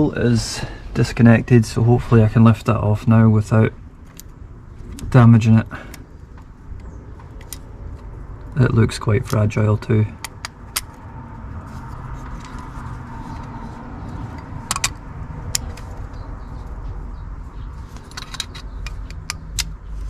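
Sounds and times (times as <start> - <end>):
steady low background noise: 0.0 - 20.0
light metallic clicks and taps: 18.0 - 19.8.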